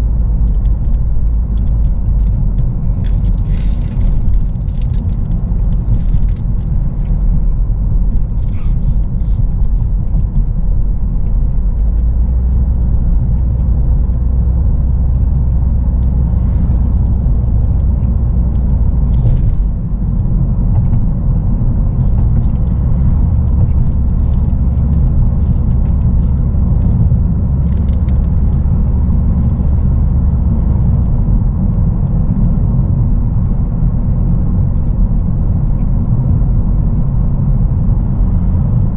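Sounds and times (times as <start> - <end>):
car interior rumble: 0.0 - 38.9
faint rattles and ticks: 0.2 - 14.2, 21.9 - 29.9.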